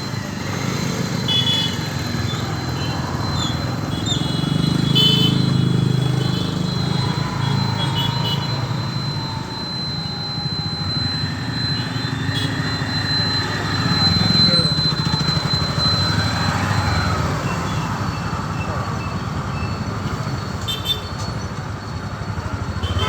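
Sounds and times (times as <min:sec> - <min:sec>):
thin high whine: 0:00.0 - 0:19.2
vehicle engines rumbling: 0:00.0 - 0:23.0
car horn toots: 0:01.3 - 0:01.9, 0:03.9 - 0:08.7, 0:22.8 - 0:23.0.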